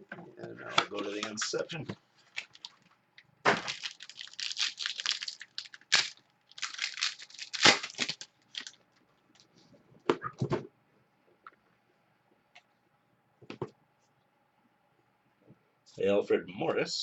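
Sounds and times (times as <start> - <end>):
wrapper tearing and crumpling: 2.3 - 2.8, 3.5 - 8.8
sharp crack: 3.4 - 8.7.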